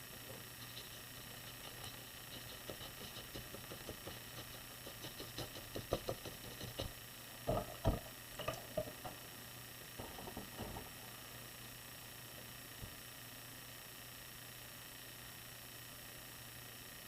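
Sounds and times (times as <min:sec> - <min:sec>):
paintbrush tapping on paper: 0:01.9 - 0:07.0.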